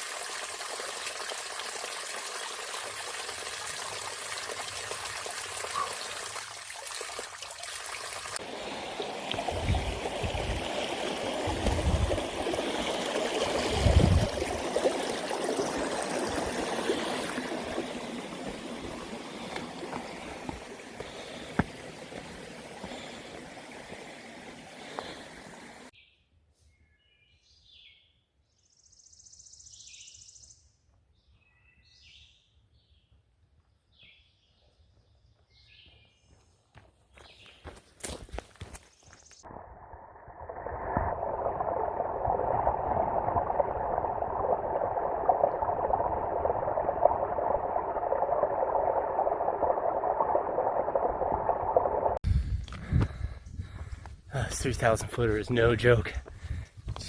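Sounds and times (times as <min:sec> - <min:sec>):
stream trickling and splashing: 0:00.0 - 0:25.9, 0:40.3 - 0:53.8.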